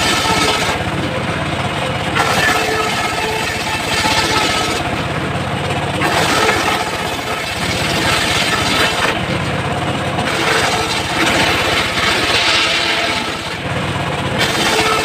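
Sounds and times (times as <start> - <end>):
saw blade cutting wood: 0.0 - 1.0, 2.2 - 5.1, 6.0 - 9.4, 10.2 - 13.6, 14.3 - 15.0
sawmill motor running: 0.0 - 15.0.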